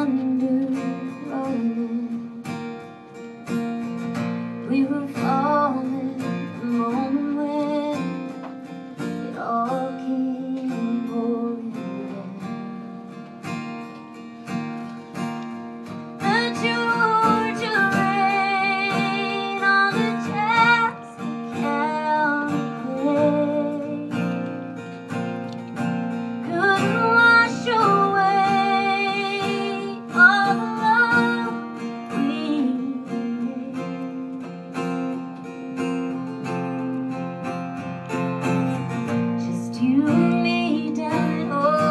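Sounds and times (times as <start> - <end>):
woman singing a country ballad: 0.0 - 2.9, 3.8 - 13.6, 15.8 - 24.9, 25.8 - 41.9
strummed acoustic guitar: 0.0 - 41.9.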